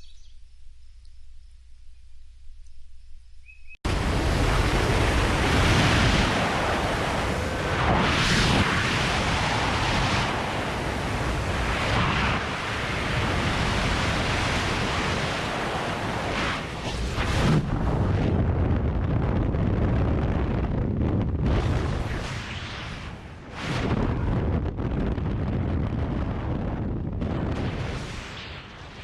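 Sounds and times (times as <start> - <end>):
loud rushing noise: 3.9 - 17.9.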